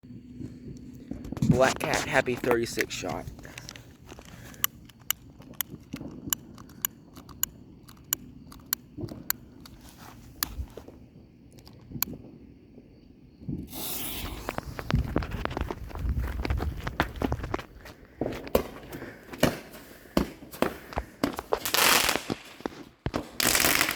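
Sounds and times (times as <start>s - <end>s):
fuse clicking and crackling: 0.7s - 10.8s, 11.5s - 12.2s, 20.8s - 23.9s
dense firework crackling: 13.4s - 16.0s, 17.9s - 23.9s
loud firework hiss: 13.5s - 15.2s, 21.4s - 23.9s.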